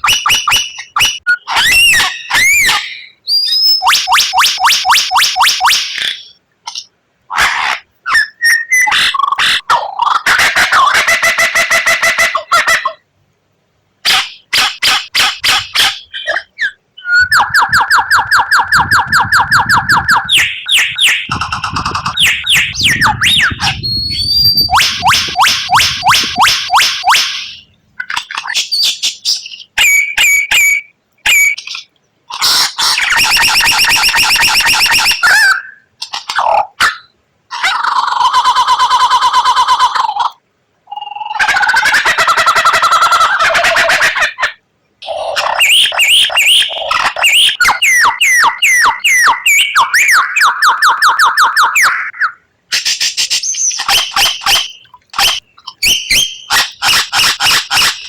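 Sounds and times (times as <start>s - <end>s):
bird song of rattling harsh notes: 0.0s - 6.9s, 14.1s - 37.1s, 45.0s - 52.2s, 52.8s - 58.0s
bird fast rattling trill: 17.2s - 27.7s.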